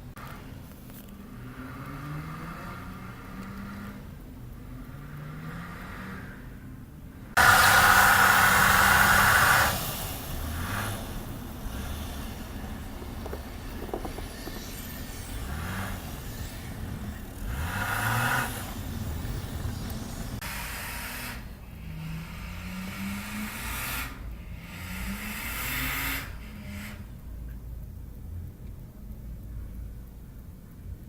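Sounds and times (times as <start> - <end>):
car engines running: 0.0 - 20.9
tyres hissing through snow: 7.4 - 21.5.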